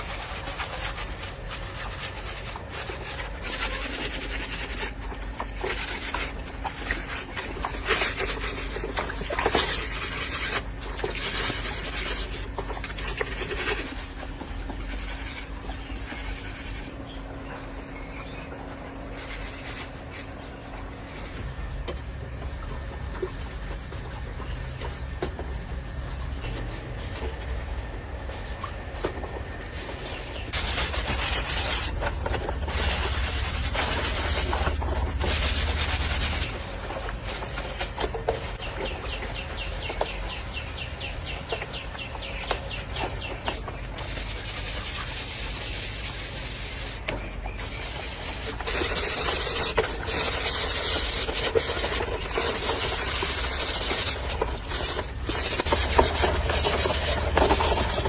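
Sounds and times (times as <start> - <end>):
hand sanding or filing: 0.0 - 17.1, 29.7 - 58.0.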